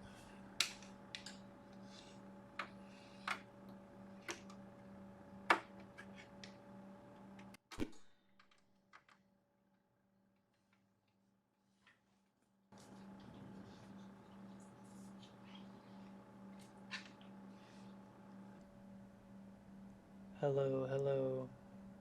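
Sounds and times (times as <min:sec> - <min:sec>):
electrical hum: 0:00.0 - 0:07.6, 0:12.8 - 0:22.0.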